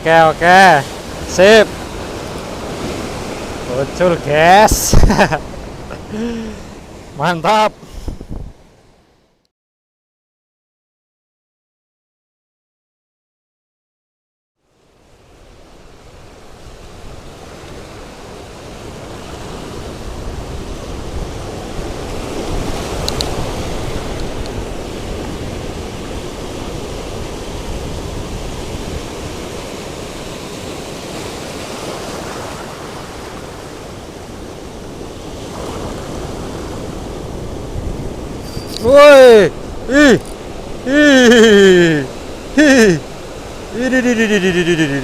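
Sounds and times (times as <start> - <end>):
ocean surf: 0.0 - 9.2, 14.6 - 45.0
wind: 0.0 - 9.5, 14.6 - 45.0.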